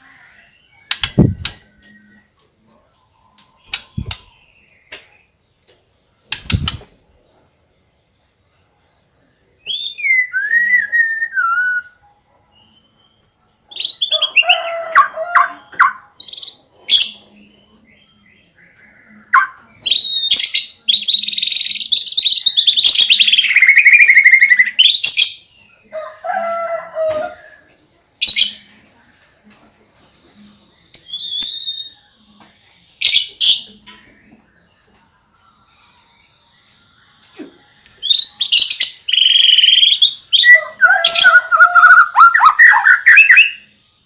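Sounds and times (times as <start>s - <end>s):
fast bird trill: 0.9s - 1.6s, 38.0s - 43.6s
bird singing whistled phrases: 9.6s - 11.9s, 31.0s - 32.1s, 38.0s - 43.7s.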